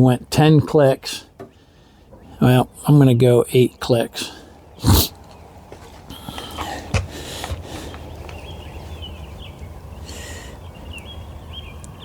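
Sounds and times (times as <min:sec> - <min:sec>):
birds chirping: 0:00.0 - 0:12.0
crossbow handling rustles: 0:05.1 - 0:09.0.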